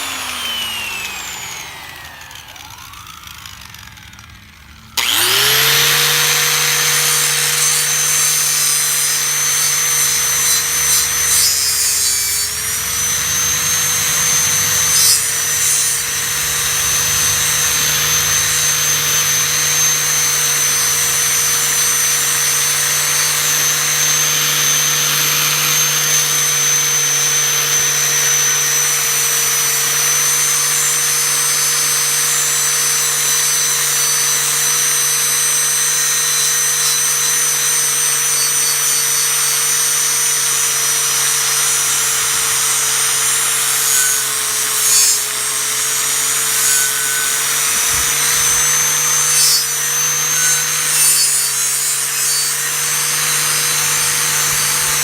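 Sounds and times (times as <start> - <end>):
angle grinder with wire wheel: 0.0 - 55.0.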